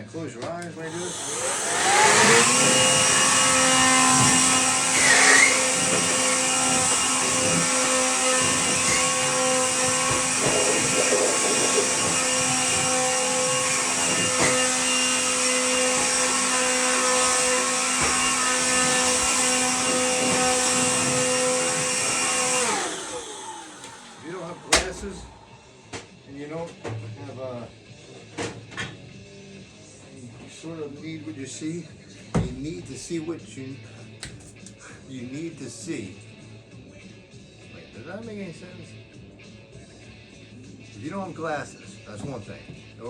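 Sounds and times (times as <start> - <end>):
blower motor whine: 0.8 - 26.0.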